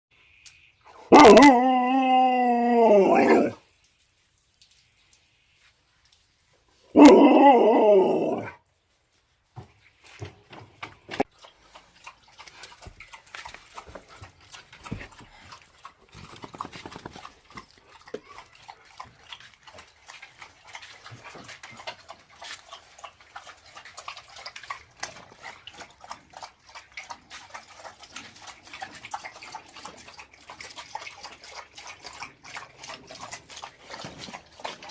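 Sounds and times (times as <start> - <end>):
dog howling: 1.1 - 3.6, 7.0 - 8.6.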